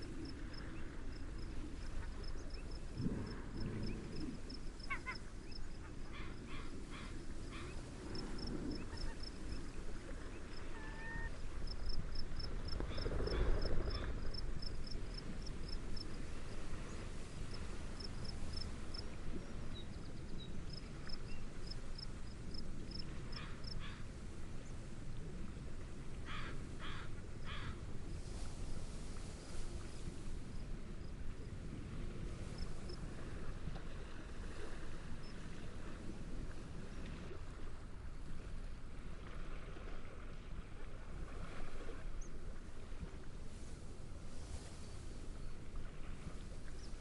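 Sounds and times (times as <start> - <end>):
cricket chirping: 0.0 - 9.7, 10.4 - 16.6, 17.5 - 24.0
gentle waves: 0.0 - 47.0
wind: 0.0 - 47.0.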